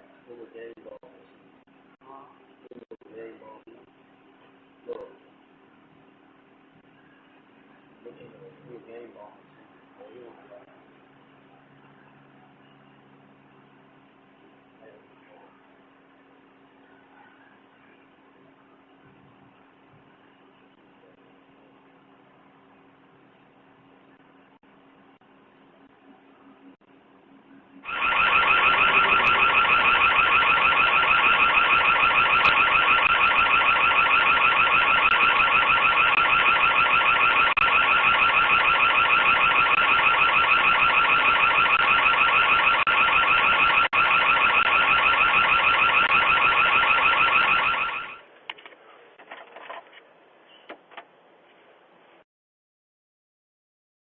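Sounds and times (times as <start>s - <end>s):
pulsing electronic alarm siren: 27.8s - 48.2s.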